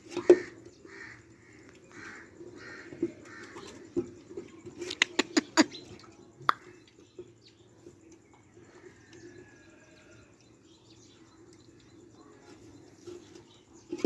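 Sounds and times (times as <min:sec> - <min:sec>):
crows cawing: 0:00.2 - 0:03.8.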